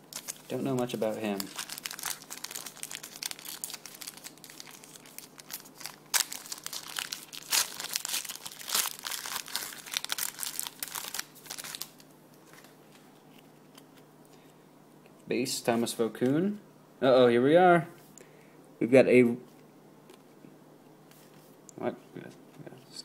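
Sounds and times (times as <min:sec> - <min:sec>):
card pack wrapper crinkling: 0:00.0 - 0:12.8.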